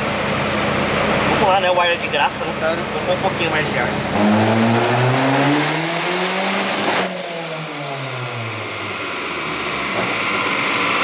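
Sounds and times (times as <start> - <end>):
car engine revving: 2.9 - 11.0.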